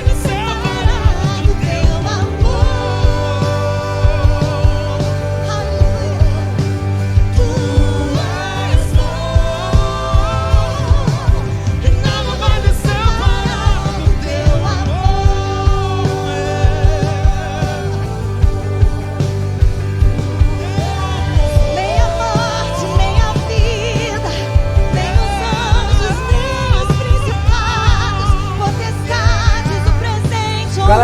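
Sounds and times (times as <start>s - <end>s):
gospel band playing: 0.0s - 31.0s
person singing long gliding notes: 0.0s - 31.0s.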